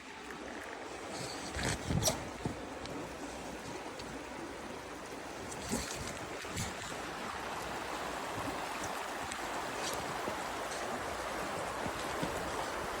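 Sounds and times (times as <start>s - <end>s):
stream water rushing over rocks: 0.0s - 13.0s
water splashes: 0.0s - 13.0s.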